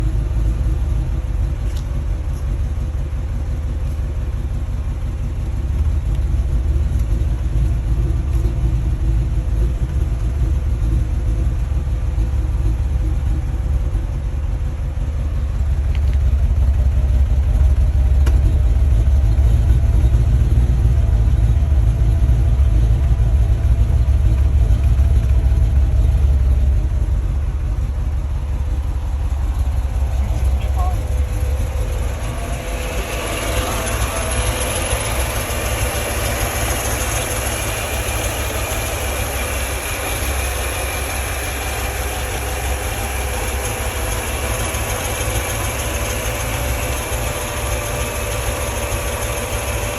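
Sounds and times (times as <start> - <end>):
car engine low rumble: 0.0 - 49.9.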